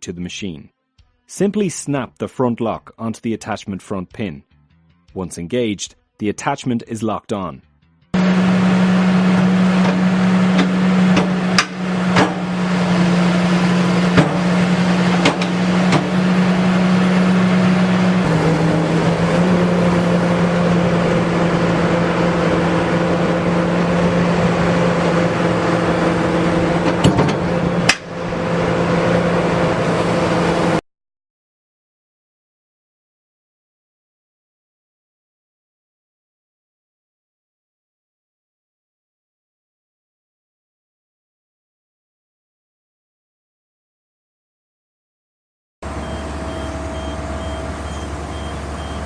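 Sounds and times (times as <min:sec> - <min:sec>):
excavator engine and hydraulics: 0:08.2 - 0:30.8, 0:45.8 - 0:49.0.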